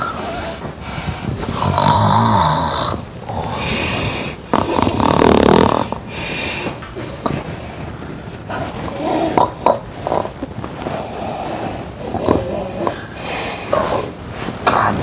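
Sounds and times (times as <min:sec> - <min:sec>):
woman snoring loudly: 0:01.5 - 0:06.2.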